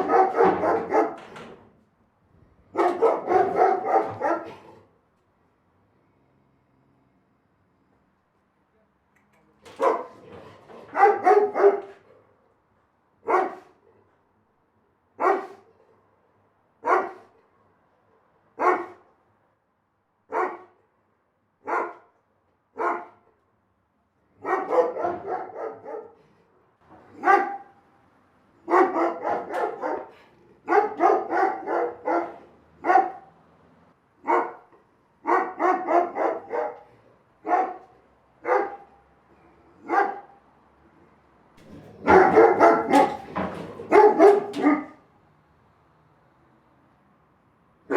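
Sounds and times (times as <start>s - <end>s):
big dog barking: 0.0s - 1.6s, 2.6s - 4.9s, 9.7s - 12.4s, 13.2s - 14.0s, 15.2s - 16.0s, 16.8s - 17.4s, 18.5s - 19.2s, 20.3s - 20.8s, 21.6s - 23.3s, 24.3s - 27.8s, 28.6s - 33.4s, 34.2s - 40.5s, 41.6s - 45.1s.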